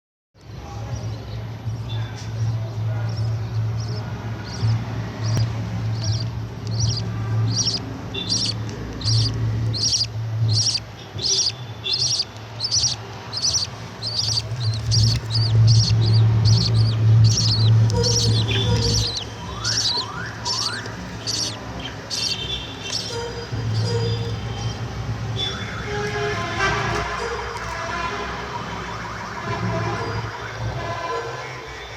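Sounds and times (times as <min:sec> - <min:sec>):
budgerigar chicks chirping: 0:03.1 - 0:24.9
steady low hum: 0:03.7 - 0:25.2.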